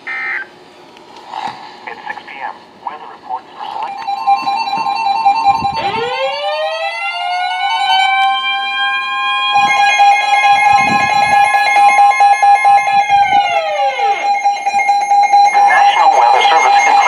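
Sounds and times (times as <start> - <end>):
siren-like tone: 3.8 - 17.0.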